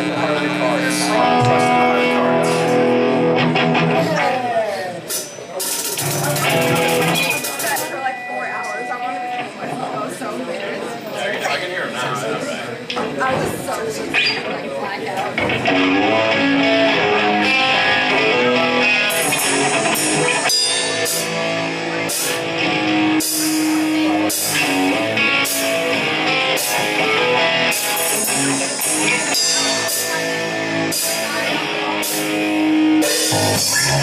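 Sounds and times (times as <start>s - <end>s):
drum kit with cymbal hits: 0.0s - 4.2s, 5.0s - 8.0s, 15.4s - 34.0s
electric guitar notes: 0.0s - 4.6s, 6.0s - 9.5s, 15.4s - 34.0s.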